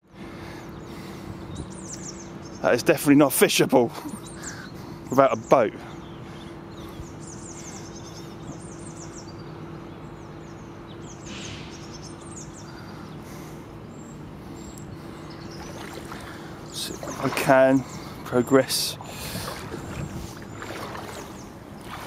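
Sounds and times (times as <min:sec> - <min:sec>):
steady low hum: 0:00.0 - 0:22.0
small birds chirping: 0:00.1 - 0:22.0.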